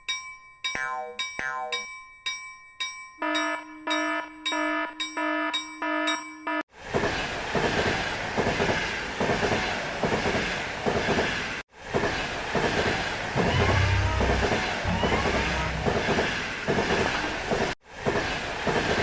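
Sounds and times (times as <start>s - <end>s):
train wheels clacking and rattling: 6.9s - 19.0s
railroad crossing bell ringing: 13.5s - 16.2s.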